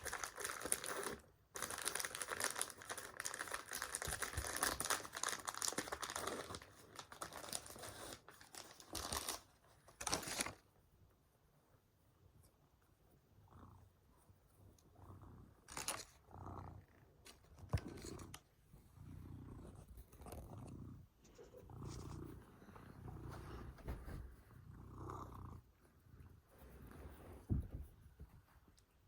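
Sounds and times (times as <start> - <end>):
cat purring: 11.7 - 29.0.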